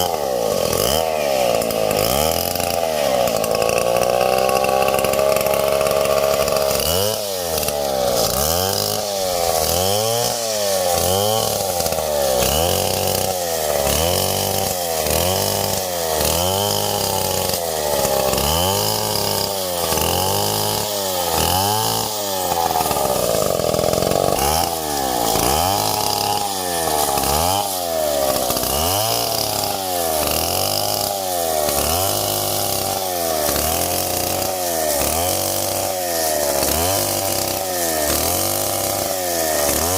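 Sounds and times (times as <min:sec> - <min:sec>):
chainsaw revving: 0:00.0 - 0:39.9.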